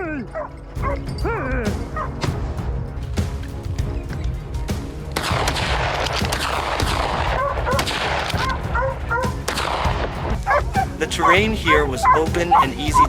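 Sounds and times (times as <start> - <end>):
hunting dogs yelping: 0.0 - 2.2, 7.0 - 9.7, 10.3 - 13.0
background music: 0.0 - 13.0
sharp rifle shots: 5.2 - 10.4.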